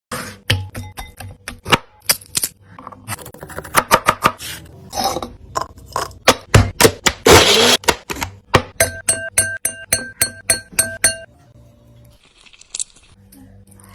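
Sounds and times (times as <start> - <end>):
kitchen utensils knocking and scraping: 7.9 - 11.3.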